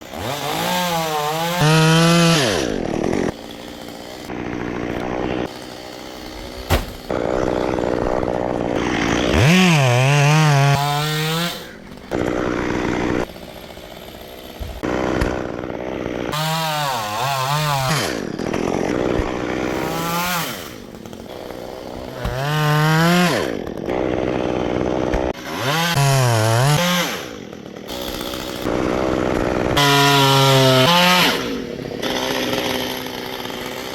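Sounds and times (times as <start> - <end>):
chainsaw engine revving: 0.0 - 33.9
sharp knock: 6.7 - 7.0.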